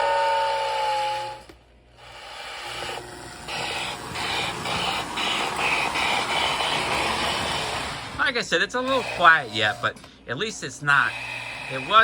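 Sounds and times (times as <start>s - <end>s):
toy train motor running: 0.0s - 10.0s, 10.7s - 12.0s
toy steam train chuffing: 0.0s - 12.0s.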